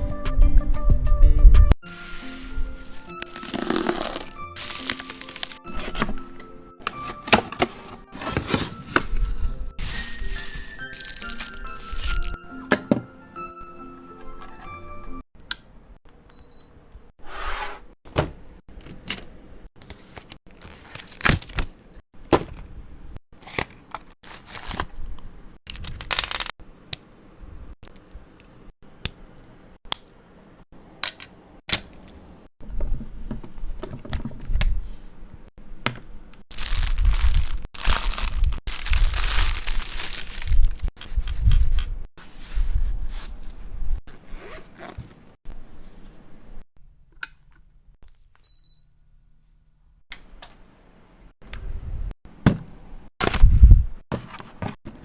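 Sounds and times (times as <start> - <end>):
packaging rustling and tearing: 2.4 - 6.1, 9.8 - 12.4, 20.5 - 21.7, 23.4 - 25.1, 36.5 - 40.9.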